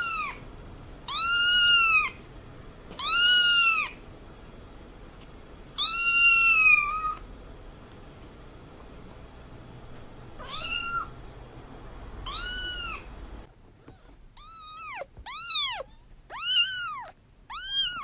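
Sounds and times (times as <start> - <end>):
cat meowing: 0.0 - 0.4, 1.1 - 2.2, 3.0 - 4.0, 5.8 - 7.2, 10.4 - 11.1, 12.2 - 13.1, 13.8 - 18.0.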